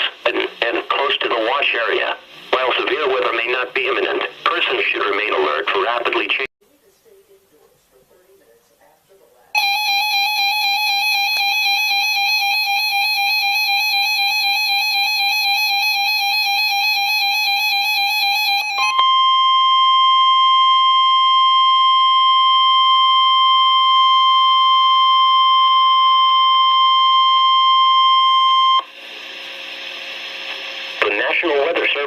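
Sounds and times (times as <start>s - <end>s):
two-tone warbling alarm: 9.6s - 31.0s
steady warning tone: 9.6s - 32.0s.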